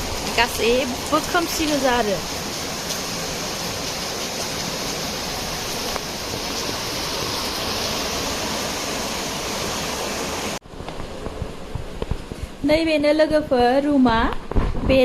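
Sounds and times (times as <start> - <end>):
falling water rushing: 0.0 - 11.8.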